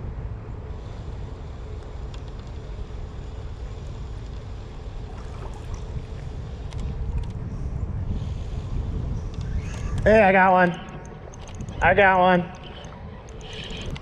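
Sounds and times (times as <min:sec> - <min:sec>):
wind rumble on microphone: 0:00.0 - 0:14.0
flowing river water: 0:04.9 - 0:06.5
faint clicks: 0:09.3 - 0:10.1, 0:10.8 - 0:11.8.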